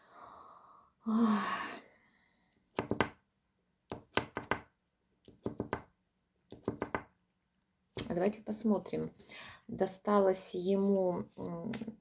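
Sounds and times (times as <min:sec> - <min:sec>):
knocks on a hard surface: 0:02.8 - 0:03.2.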